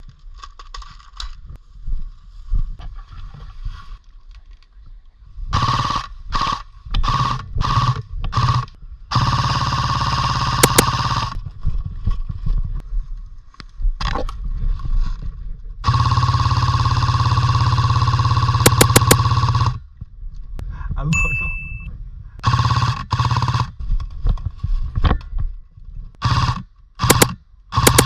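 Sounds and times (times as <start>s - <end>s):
airsoft gun automatic bursts: 5.5s - 11.4s, 15.8s - 19.8s, 22.4s - 23.8s, 26.2s - 28.0s.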